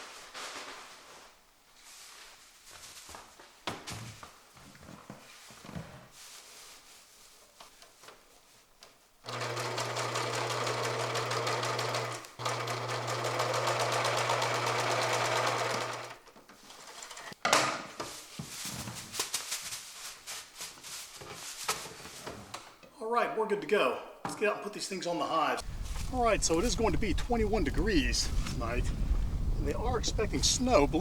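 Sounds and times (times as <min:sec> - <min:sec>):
rustling handling sounds: 0:00.0 - 0:09.2, 0:16.3 - 0:22.8, 0:25.6 - 0:28.8
sewing machine stitching: 0:09.2 - 0:16.2.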